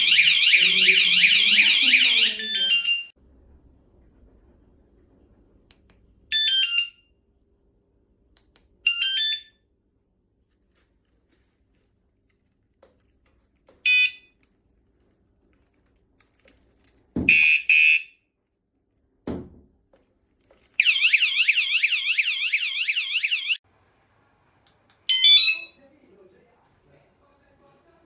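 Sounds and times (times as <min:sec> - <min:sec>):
alarm chirp: 0:00.0 - 0:03.1, 0:20.8 - 0:23.6, 0:25.1 - 0:25.8
fast-warbling alarm siren: 0:00.0 - 0:03.1, 0:20.8 - 0:23.6
knock: 0:19.3 - 0:19.7.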